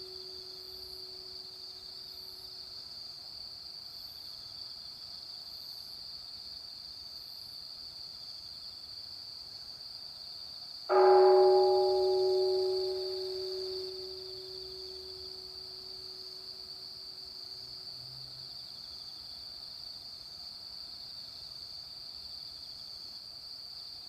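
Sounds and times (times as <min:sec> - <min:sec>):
temple bell hum over loudspeaker: 0:10.9 - 0:16.3
insects trilling: 0:10.9 - 0:19.1.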